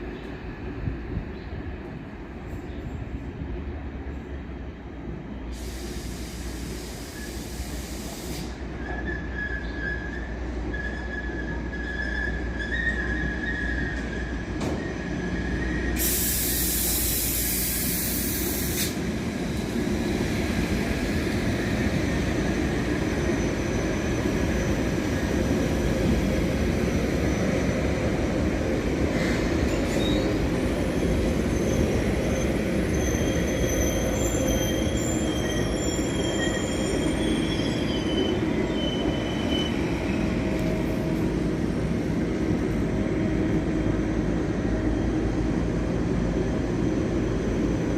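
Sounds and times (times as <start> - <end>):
train rumble: 0.0 - 47.9
train wheels squealing on rails: 5.1 - 45.8, 46.4 - 47.9
short hiss: 5.5 - 8.6, 16.0 - 19.0.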